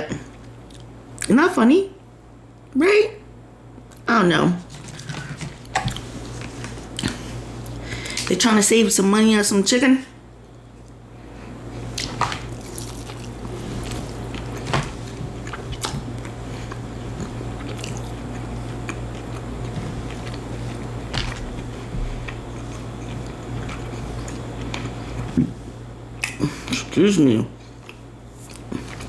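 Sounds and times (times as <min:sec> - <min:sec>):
low steady hum: 0:00.0 - 0:29.0
person chewing crunchy food: 0:10.8 - 0:25.4, 0:27.6 - 0:29.0.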